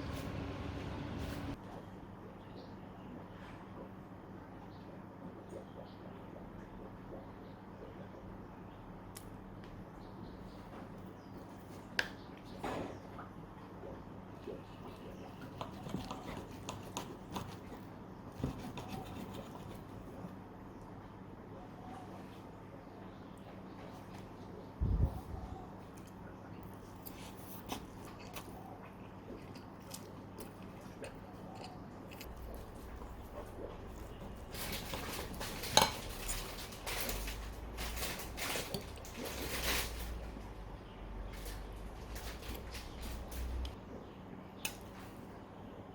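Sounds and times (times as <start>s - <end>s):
utensils and dishes clattering: 34.4s - 40.3s.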